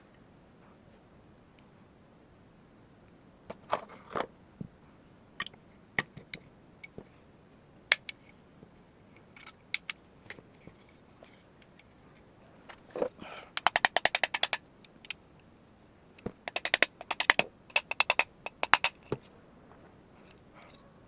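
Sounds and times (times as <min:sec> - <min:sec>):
small plastic parts clicking: 0:13.6 - 0:15.2, 0:16.2 - 0:19.2.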